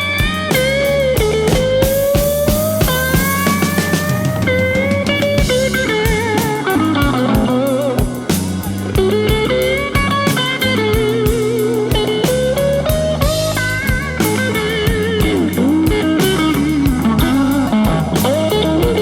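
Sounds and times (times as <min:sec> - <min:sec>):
bass: 0:00.0 - 0:19.0
drum kit beat: 0:00.0 - 0:19.0
electric guitar solo: 0:00.0 - 0:19.0.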